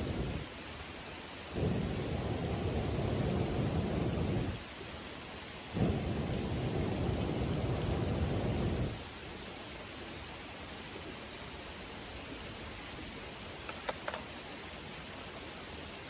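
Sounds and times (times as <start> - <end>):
air blasts on microphone: 1.5 - 4.6, 5.7 - 9.0.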